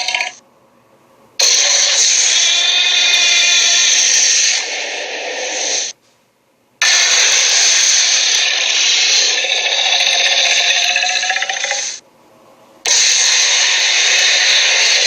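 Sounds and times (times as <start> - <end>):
loud harsh hissing: 1.4 - 6.0, 6.8 - 12.0, 12.8 - 15.0.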